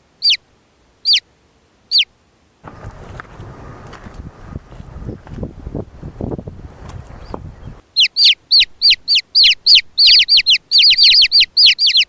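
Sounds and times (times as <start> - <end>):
bird calling repeated notes: 0.2 - 0.4, 1.0 - 1.2, 7.1 - 12.0
low noisy rumble: 2.6 - 7.8.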